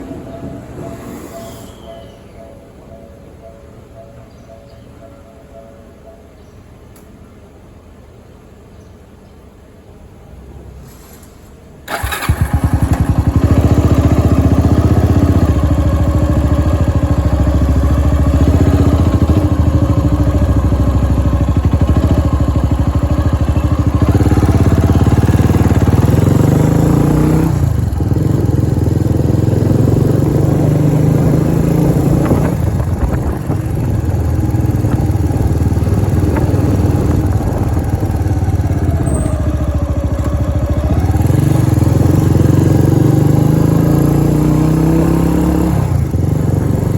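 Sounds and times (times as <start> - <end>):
vehicle engine running: 11.9 - 46.9.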